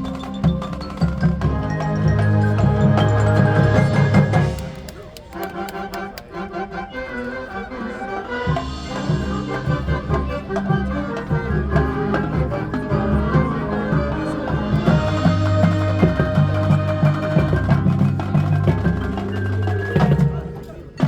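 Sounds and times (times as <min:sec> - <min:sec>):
marching band playing: 0:00.0 - 0:21.0.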